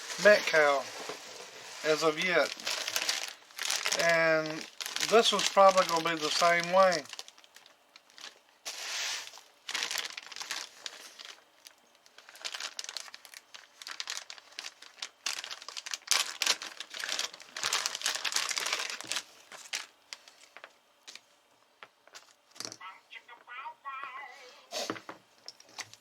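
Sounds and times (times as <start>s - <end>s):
packaging crinkling and rustling: 0.0s - 21.3s, 22.0s - 22.7s.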